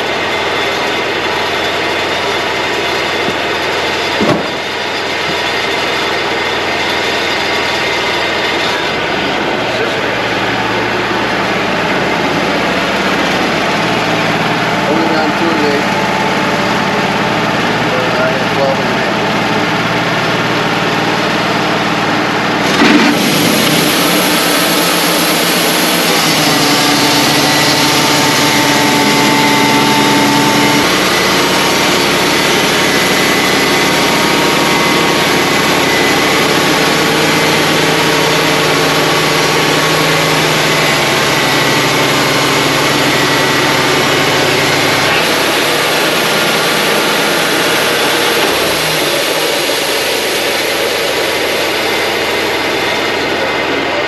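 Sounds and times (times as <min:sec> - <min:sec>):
band sawmill running: 0:00.0 - 0:54.0
short knock: 0:04.2 - 0:04.6.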